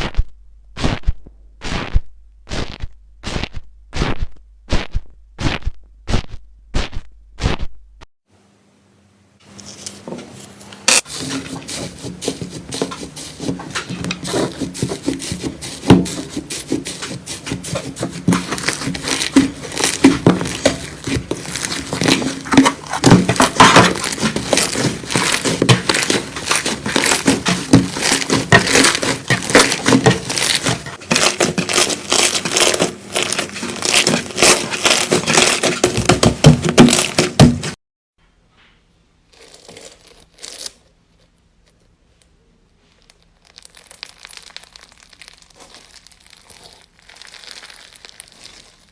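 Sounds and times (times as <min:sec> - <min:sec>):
slime squeezed by hand: 0:00.0 - 0:07.6, 0:42.9 - 0:48.9.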